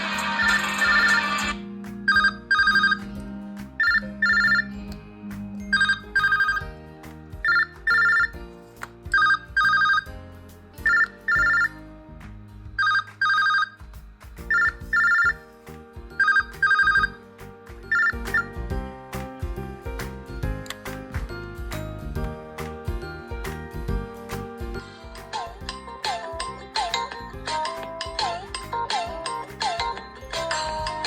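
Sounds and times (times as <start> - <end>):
phone ringtone double ring: 0.0 - 3.0, 3.8 - 5.0, 5.6 - 6.7, 7.4 - 8.4, 9.2 - 10.1, 10.8 - 11.8, 12.8 - 13.8, 14.5 - 15.4, 16.2 - 17.1, 17.9 - 18.6
musical backing: 0.0 - 31.0.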